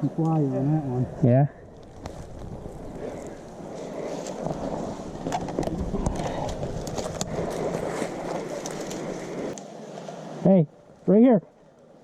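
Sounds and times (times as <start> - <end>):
rustling and scraping through brush: 1.6 - 10.4.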